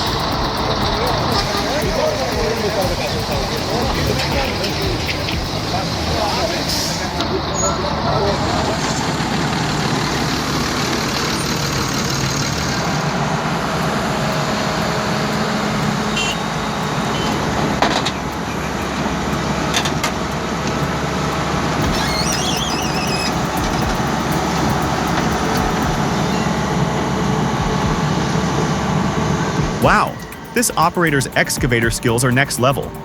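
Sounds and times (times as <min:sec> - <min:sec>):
diesel engine running: 0:00.0 - 0:33.0
brief high squeal: 0:21.8 - 0:23.4.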